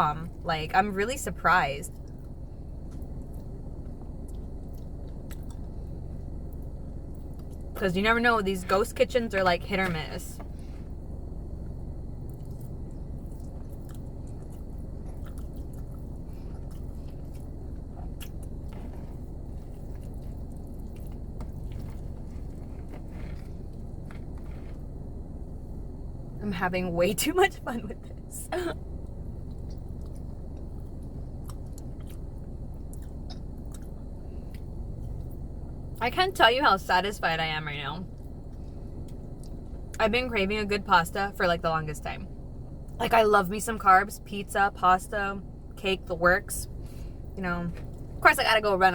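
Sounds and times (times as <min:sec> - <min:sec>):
low background rumble: 0:00.0 - 0:48.9
steady low hum: 0:00.0 - 0:48.9
person chewing food: 0:02.0 - 0:07.8, 0:11.6 - 0:25.8, 0:29.3 - 0:35.4.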